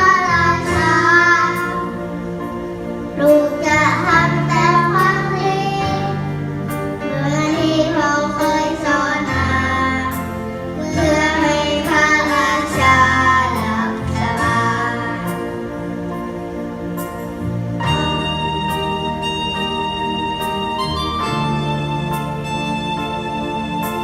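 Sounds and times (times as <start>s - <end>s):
girl singing: 0.0s - 2.0s, 3.2s - 6.3s, 7.1s - 10.2s, 10.8s - 15.4s
backing track through loudspeakers: 0.0s - 24.0s.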